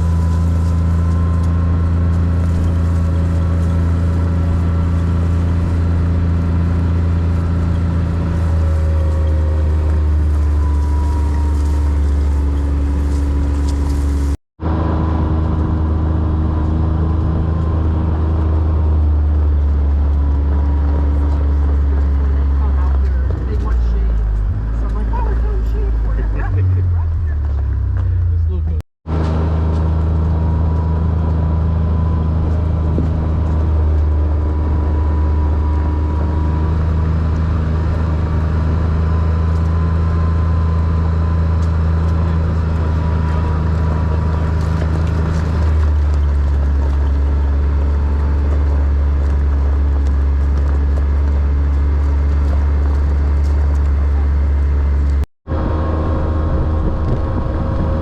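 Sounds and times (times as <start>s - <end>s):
atv engine running: 0.0s - 58.0s.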